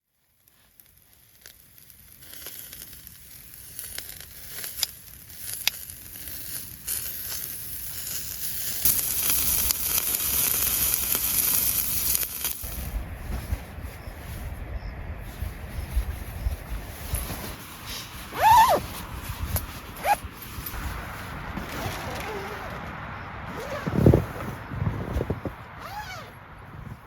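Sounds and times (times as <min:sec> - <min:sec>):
crackling hissing noise: 0:00.0 - 0:22.8.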